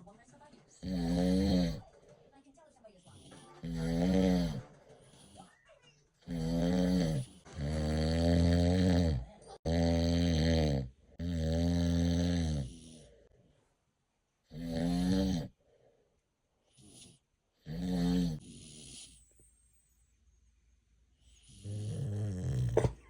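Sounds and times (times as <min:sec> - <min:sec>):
man snoring loudly: 0:00.8 - 0:01.8, 0:03.6 - 0:04.6, 0:06.3 - 0:13.0, 0:14.5 - 0:15.5, 0:17.7 - 0:19.0, 0:21.5 - 0:22.8.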